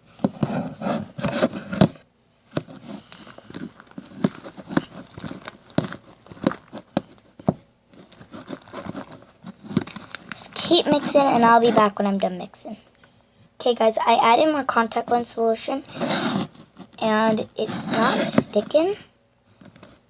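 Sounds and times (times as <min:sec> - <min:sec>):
stick stirring sticky slime: 0:02.6 - 0:11.9, 0:15.9 - 0:19.0.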